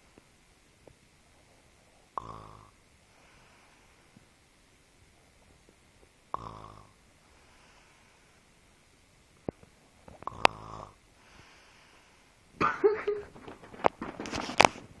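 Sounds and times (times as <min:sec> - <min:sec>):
person snoring: 0:02.2 - 0:03.5, 0:06.3 - 0:07.9, 0:10.2 - 0:11.0
faint breathing: 0:03.0 - 0:04.3, 0:06.4 - 0:08.6, 0:09.8 - 0:12.6
rustling: 0:13.2 - 0:15.0.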